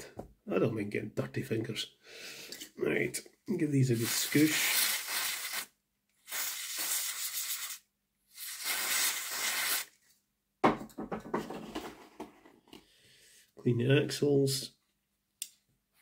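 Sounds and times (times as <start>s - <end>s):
aerosol spray bursts: 4.0s - 7.8s, 8.4s - 9.9s.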